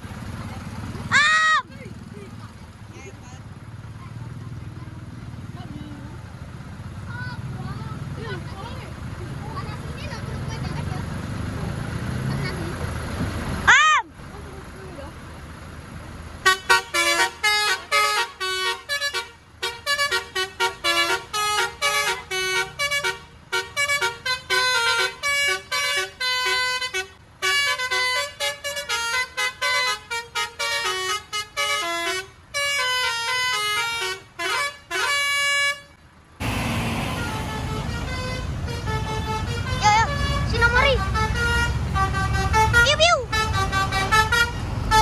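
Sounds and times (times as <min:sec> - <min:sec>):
bus musical horn melody: 0:16.3 - 0:45.0.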